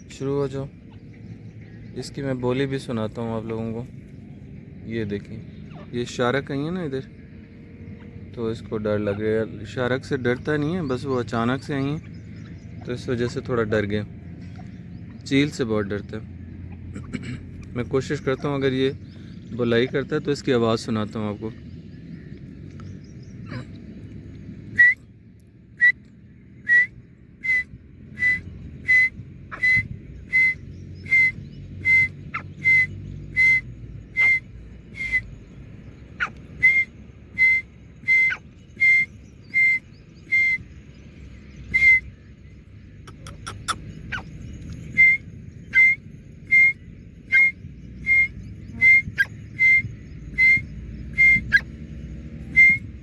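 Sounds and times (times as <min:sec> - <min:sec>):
short high whistled notes: 0:45.0 - 0:50.6, 0:52.6 - 0:52.8.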